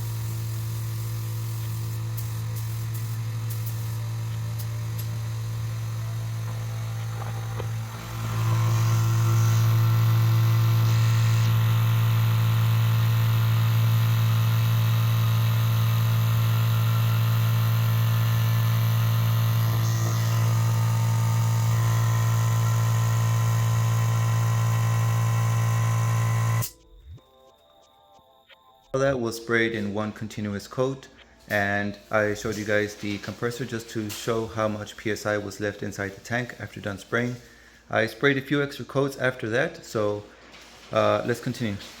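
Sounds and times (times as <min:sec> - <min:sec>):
air compressor running: 0:00.0 - 0:27.2.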